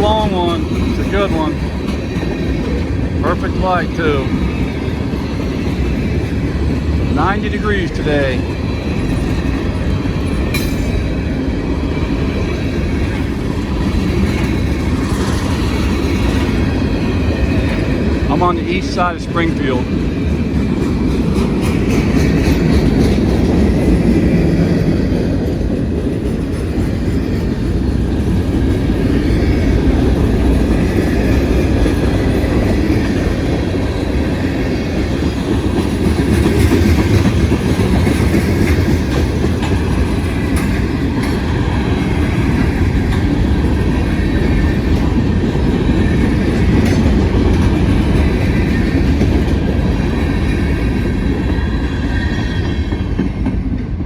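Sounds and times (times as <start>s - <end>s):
freight train rumbling past: 0.0s - 54.0s
wheels clattering over rail joints: 8.4s - 18.3s, 19.9s - 51.5s.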